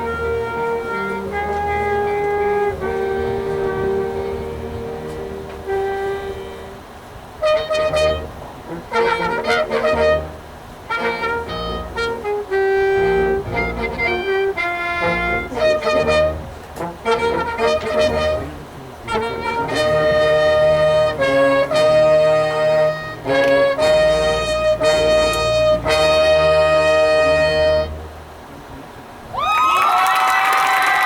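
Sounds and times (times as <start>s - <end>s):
marching band playing: 0.0s - 28.4s.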